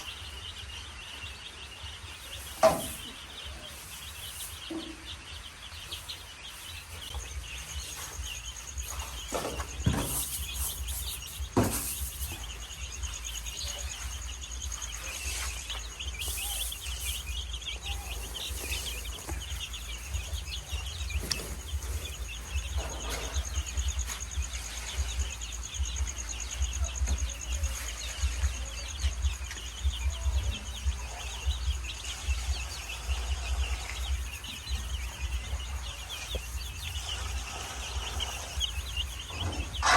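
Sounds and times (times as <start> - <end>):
night insects trilling and chirping: 7.1 - 39.9.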